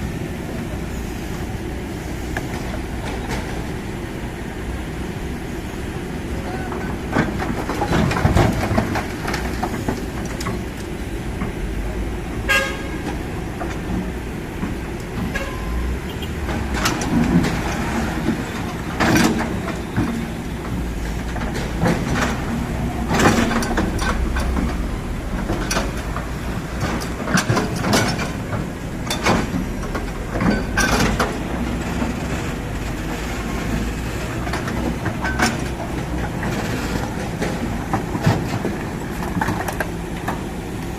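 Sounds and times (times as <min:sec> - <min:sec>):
excavator diesel engine running: 0:00.0 - 0:40.9
metallic clanks and knocks: 0:16.4 - 0:40.5.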